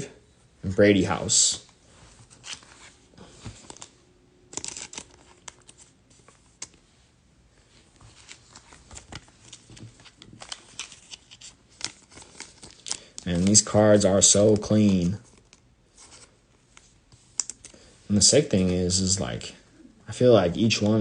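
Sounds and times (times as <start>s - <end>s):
trading cards rustling and clicking: 2.2s - 6.8s, 8.0s - 19.2s.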